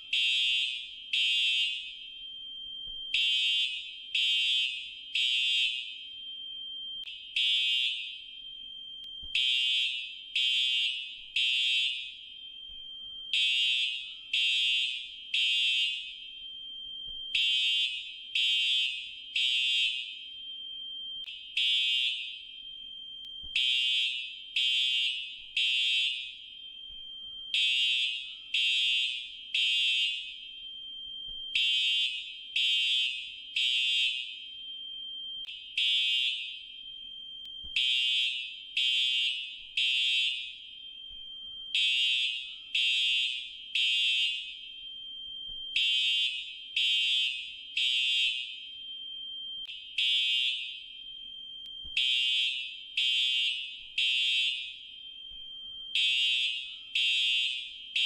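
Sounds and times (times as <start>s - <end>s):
fire alarm beeping: 0.0s - 58.0s.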